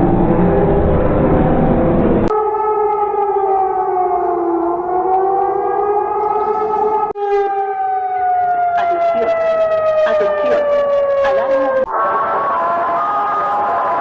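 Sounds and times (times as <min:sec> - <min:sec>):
siren with falling tone: 0:00.0 - 0:14.0
warning siren wailing: 0:00.0 - 0:14.0.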